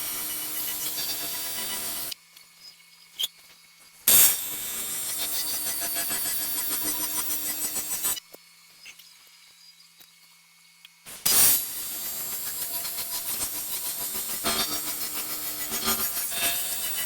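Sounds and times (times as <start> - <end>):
welding arc buzzing: 0.0 - 2.1, 4.1 - 8.2, 11.1 - 17.0.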